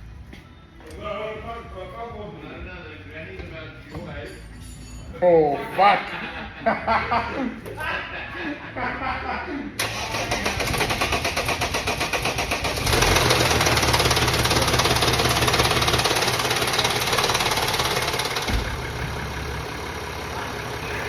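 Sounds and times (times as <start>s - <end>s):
car engine cranking and idling: 9.8s - 21.0s
thump: 18.5s - 18.8s.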